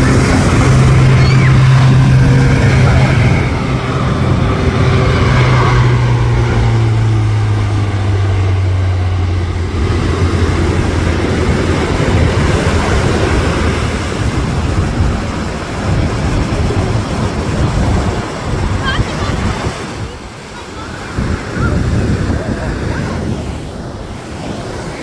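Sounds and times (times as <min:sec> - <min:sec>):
propeller aircraft droning: 0:00.0 - 0:25.0.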